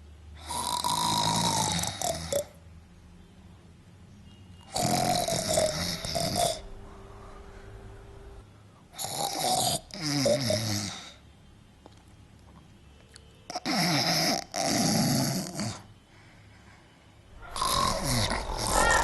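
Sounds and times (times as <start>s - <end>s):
woman snoring loudly: 0.4s - 2.5s, 4.7s - 6.7s, 9.0s - 11.1s, 13.6s - 15.9s, 17.6s - 19.0s.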